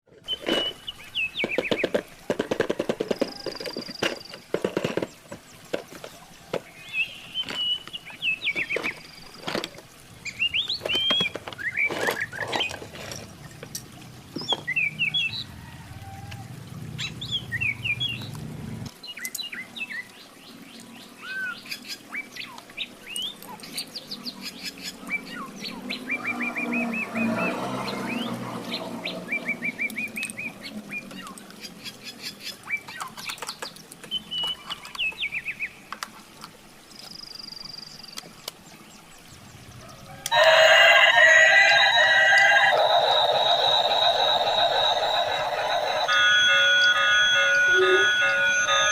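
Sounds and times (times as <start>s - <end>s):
small birds chirping: 0.1s - 2.4s, 3.0s - 12.9s, 14.3s - 15.6s, 17.0s - 40.3s
toy packaging clicking and rustling: 1.4s - 6.7s, 8.5s - 10.0s, 10.7s - 14.6s, 32.8s - 35.2s, 40.3s - 46.5s.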